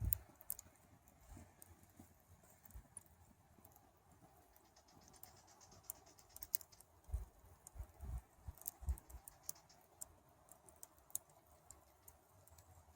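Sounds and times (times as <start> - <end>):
campfire crackling: 0.0 - 12.9.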